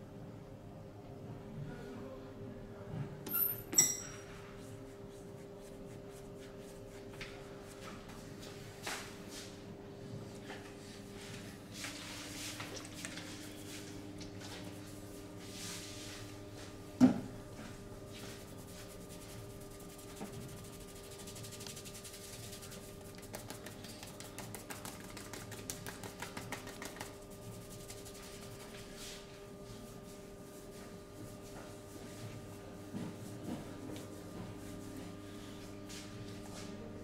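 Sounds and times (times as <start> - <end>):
hands rubbing skin: 18.2 - 29.3.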